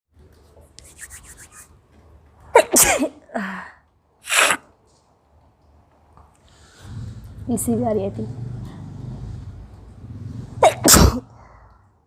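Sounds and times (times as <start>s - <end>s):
faint rasping strokes: 0.8s - 1.7s
woman sneezing: 2.6s - 3.2s, 4.3s - 4.7s, 10.6s - 11.2s.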